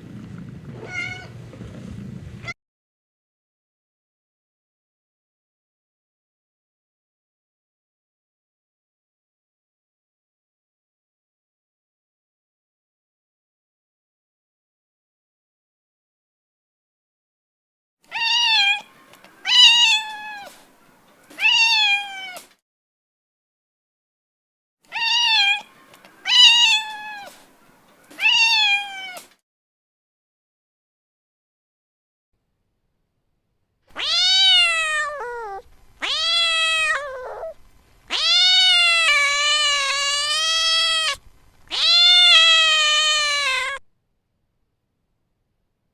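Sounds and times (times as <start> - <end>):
cat meowing: 0.8 - 1.4, 18.1 - 20.5, 21.4 - 22.4, 24.9 - 27.3, 28.1 - 29.2, 33.9 - 43.8.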